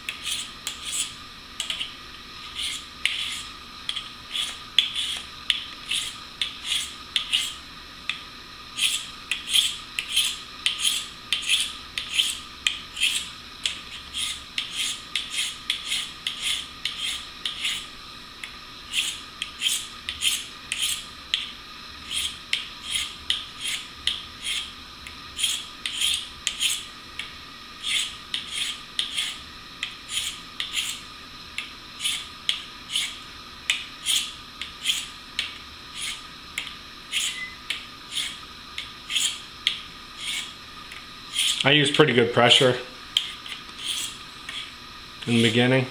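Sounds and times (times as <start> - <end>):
blade scraping on sharpening stone: 0.1 - 7.6, 8.8 - 17.9, 18.9 - 21.4, 22.0 - 24.7, 25.4 - 26.9, 27.8 - 29.4, 30.1 - 31.0, 32.0 - 33.2, 34.0 - 35.2, 35.9 - 36.2, 37.1 - 38.4, 39.1 - 39.4, 40.2 - 40.6, 41.3 - 41.7, 43.2 - 44.8.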